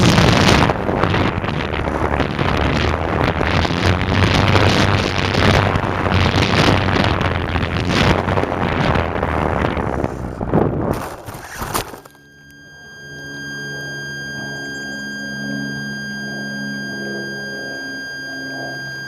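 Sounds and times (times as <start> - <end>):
wind buffeting microphone: 0.0 - 12.0
electric motor and propeller drone: 0.0 - 19.0.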